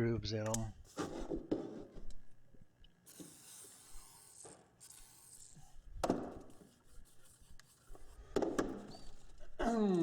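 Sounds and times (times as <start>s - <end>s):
sanding strokes on sandpaper: 3.1s - 5.6s.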